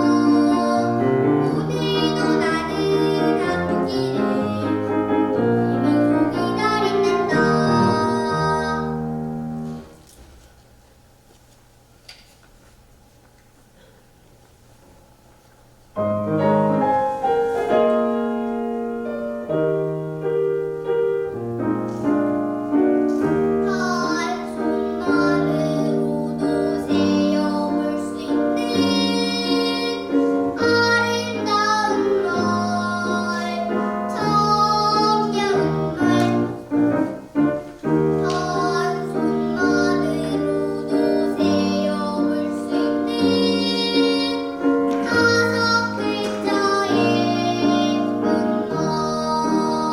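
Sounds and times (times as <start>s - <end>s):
child singing: 0.0s - 9.1s, 23.4s - 37.1s, 38.0s - 49.9s
piano accompaniment: 0.0s - 11.3s, 15.0s - 49.9s.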